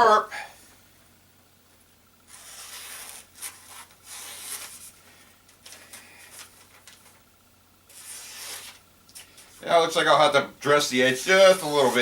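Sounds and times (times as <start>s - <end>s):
knife edge rubbing strokes: 2.3s - 5.0s, 7.9s - 8.8s, 11.5s - 12.0s.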